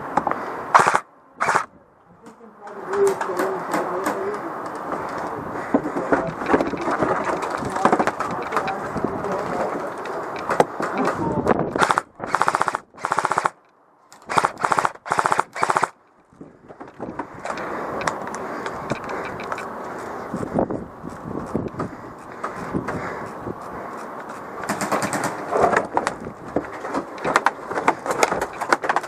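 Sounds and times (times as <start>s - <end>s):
continuous rough noise: 0.0s - 29.0s
airsoft rifle full-auto bursts: 0.7s - 1.7s, 11.8s - 13.6s, 14.3s - 16.0s.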